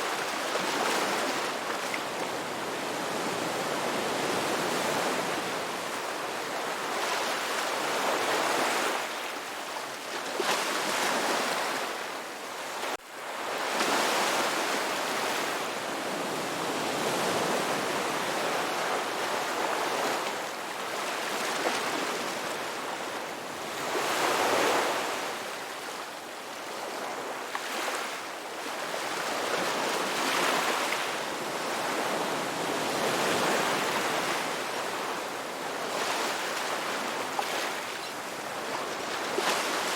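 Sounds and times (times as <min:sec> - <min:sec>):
ocean waves breaking on beach: 0:00.0 - 0:39.9.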